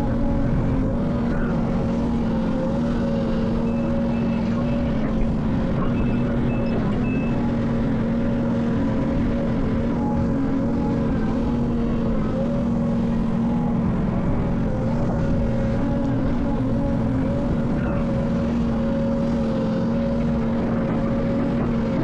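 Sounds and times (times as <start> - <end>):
diesel engine of heavy machinery: 0.0 - 22.0
faint high beeps: 5.9 - 7.5.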